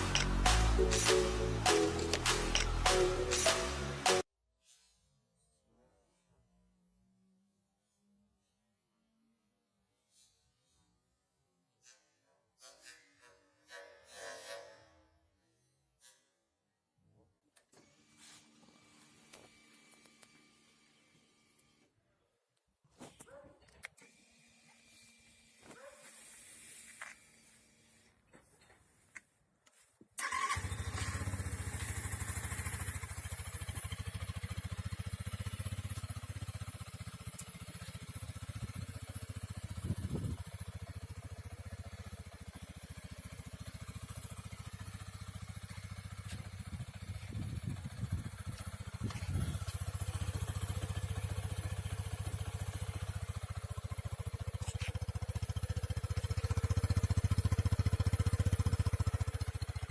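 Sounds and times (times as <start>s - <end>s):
motorcycle engine starting and idling: 0.0s - 4.2s, 30.2s - 59.9s.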